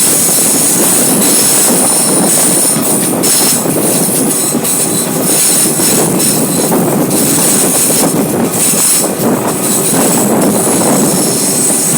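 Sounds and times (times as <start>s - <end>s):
train wheels rumbling on rails: 0.0s - 11.9s.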